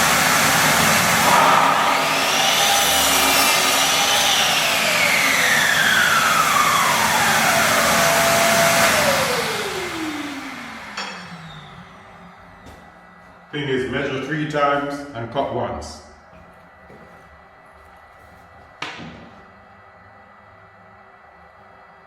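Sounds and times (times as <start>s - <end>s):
power saw motor winding down: 0.0s - 12.7s.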